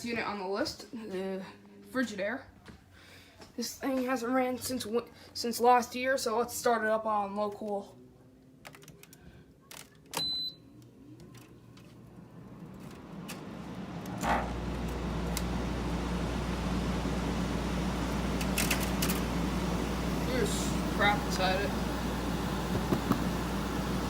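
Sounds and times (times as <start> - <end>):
short beep: 10.2 - 10.6
compressor low hum: 11.0 - 24.0
fan spinning up: 11.6 - 24.0
air conditioner click: 12.9 - 15.6, 18.1 - 24.0.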